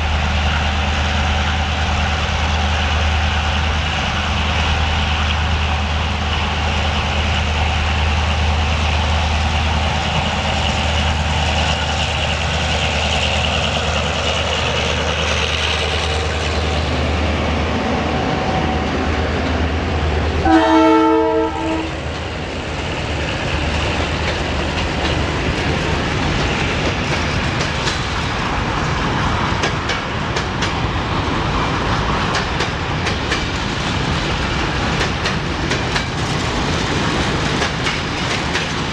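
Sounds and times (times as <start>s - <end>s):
diesel locomotive engine drone: 0.0s - 38.9s
locomotive horn blast: 20.4s - 22.0s
wheels clicking over rail joints: 22.0s - 38.9s.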